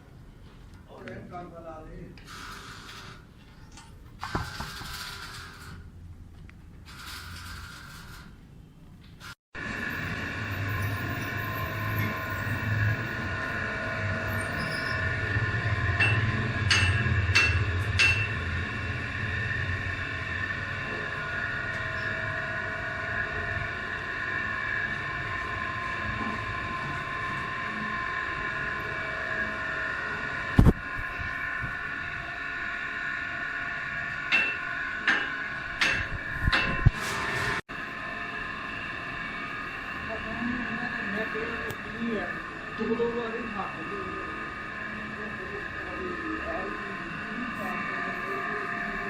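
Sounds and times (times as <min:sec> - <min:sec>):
machine whining: 0:06.9 - 0:08.4, 0:09.2 - 0:49.0
low machine hum: 0:09.6 - 0:49.0.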